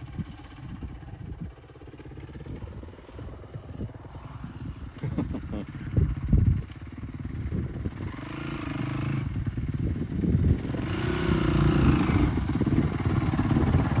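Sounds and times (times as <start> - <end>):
dirt bike engine revving: 7.2 - 14.0.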